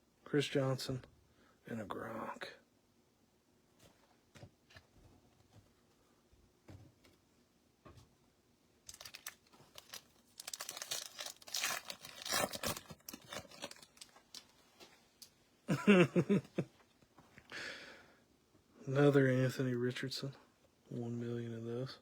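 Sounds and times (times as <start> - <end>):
foil wrapper tearing and crinkling: 8.9 - 14.5.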